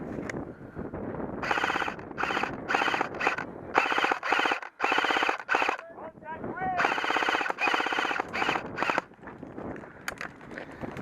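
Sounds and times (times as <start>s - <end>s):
wind on microphone: 0.0s - 4.6s, 5.5s - 11.0s
airsoft gun full-auto bursts: 1.4s - 5.8s, 6.8s - 9.1s.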